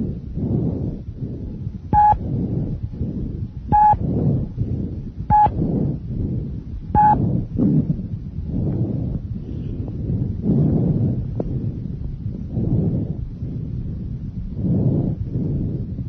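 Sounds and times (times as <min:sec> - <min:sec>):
breath sounds through stethoscope: 0:00.0 - 0:16.0
short high beeps: 0:02.0 - 0:02.2, 0:03.8 - 0:04.0, 0:05.3 - 0:05.5, 0:07.0 - 0:07.2.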